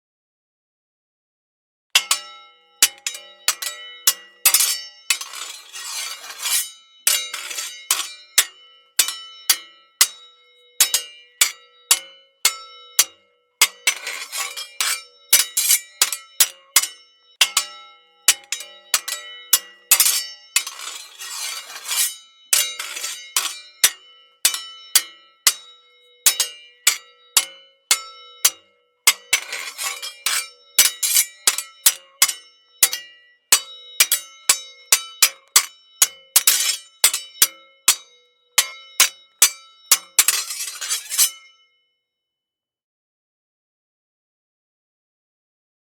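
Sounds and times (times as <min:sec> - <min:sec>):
blade scraping along blade: 0:02.0 - 0:10.2, 0:10.8 - 0:41.5
swords clashing: 0:02.0 - 0:41.5.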